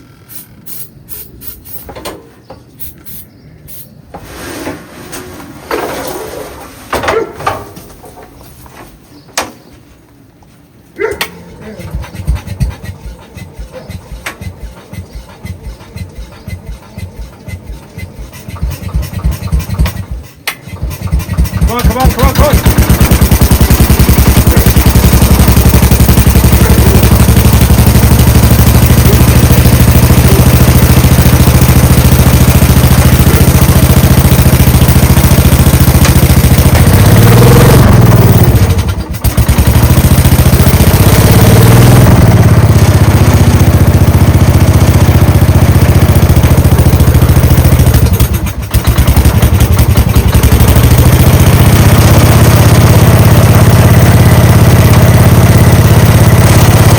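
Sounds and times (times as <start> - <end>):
tractor engine running: 11.6 - 56.9.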